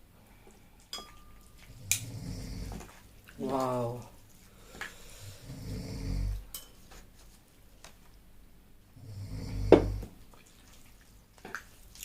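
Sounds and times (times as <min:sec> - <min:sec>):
man snoring: 0:02.0 - 0:02.7, 0:05.2 - 0:06.4, 0:09.0 - 0:10.0.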